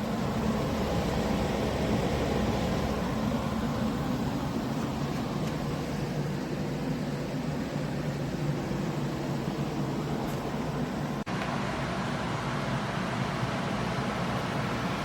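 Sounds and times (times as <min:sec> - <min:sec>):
low hum: 0:00.0 - 0:11.3
air conditioner fan rushing: 0:00.0 - 0:15.0.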